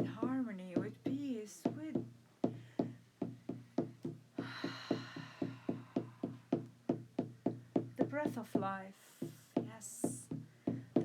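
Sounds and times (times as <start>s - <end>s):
frame drum beating: 0.0s - 2.6s, 3.2s - 8.8s
soft hiss: 0.0s - 10.9s.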